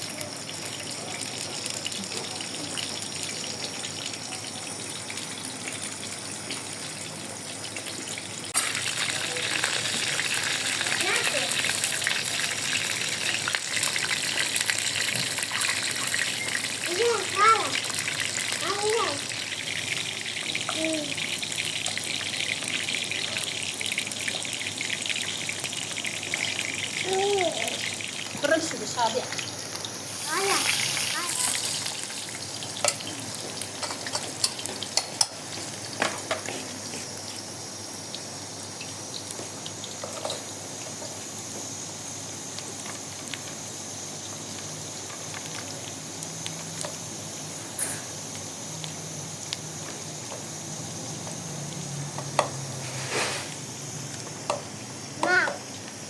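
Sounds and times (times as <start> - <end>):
water running: 0.0 - 21.2, 22.5 - 35.9
food sizzling in a pan: 0.0 - 56.0.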